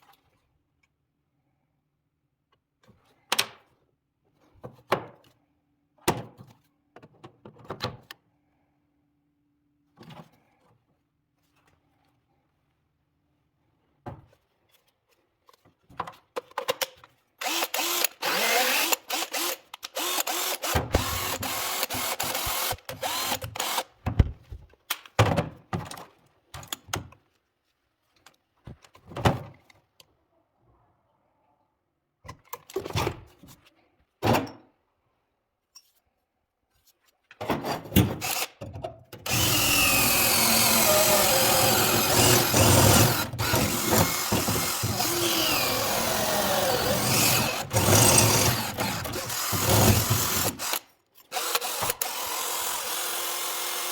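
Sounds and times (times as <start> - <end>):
cordless drill motor: 17.4 - 23.9, 38.2 - 38.6, 39.2 - 53.9.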